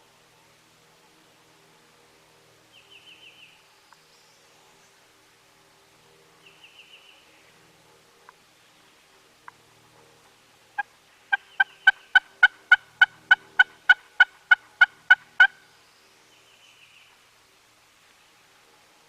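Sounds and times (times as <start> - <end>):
turkey yelps: 10.8 - 15.6.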